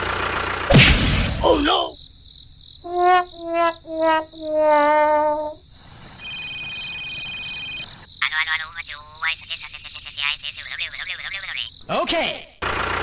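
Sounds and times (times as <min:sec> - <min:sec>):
sad trombone sound effect: 0:02.9 - 0:05.6.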